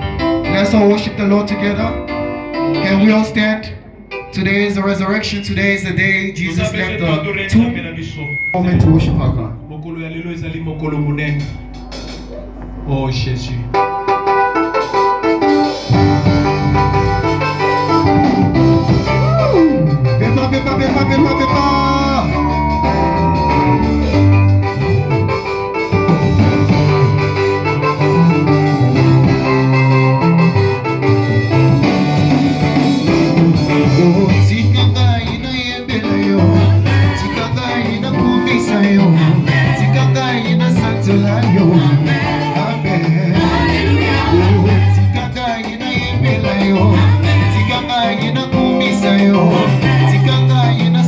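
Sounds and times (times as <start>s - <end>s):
band playing upbeat gospel: 10.6s - 51.0s
people singing: 33.6s - 51.0s.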